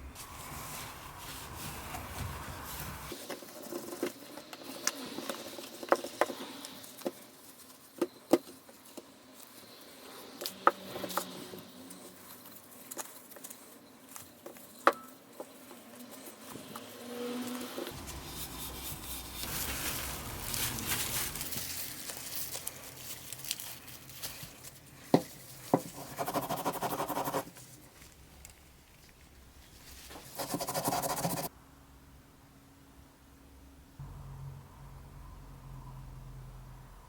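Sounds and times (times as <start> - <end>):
harsh noise bursts: 17.9 - 22.3
scraping and scratching: 17.9 - 28.2.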